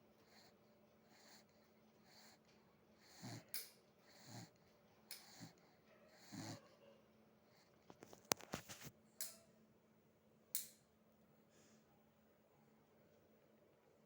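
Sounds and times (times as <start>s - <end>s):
faint wheezy snoring: 0.2s - 6.7s.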